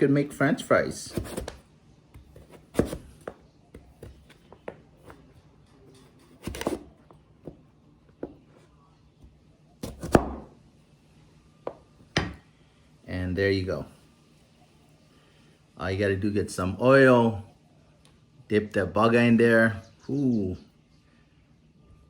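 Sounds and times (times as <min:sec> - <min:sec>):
knife cutting with sharp knocks: 0:01.1 - 0:01.6, 0:02.2 - 0:04.5, 0:06.2 - 0:06.9.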